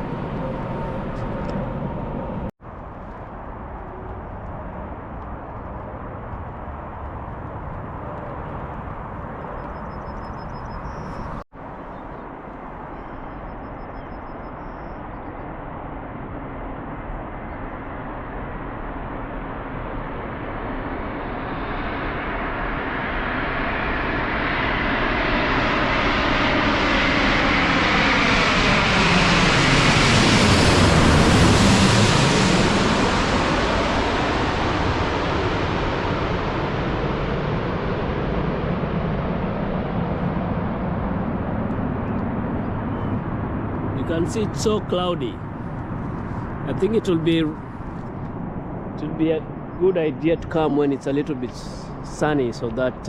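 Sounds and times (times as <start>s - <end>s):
jet airliner flying overhead: 0.0s - 53.0s.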